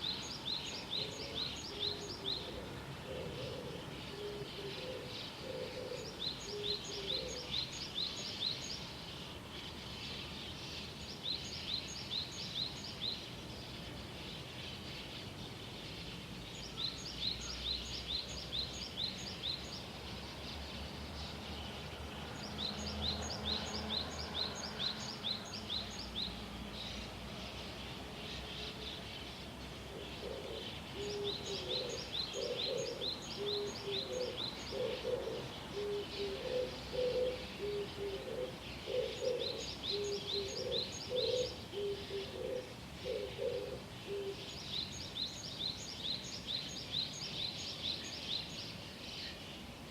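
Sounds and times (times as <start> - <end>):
dove cooing: 1.0 - 7.6, 29.9 - 44.5.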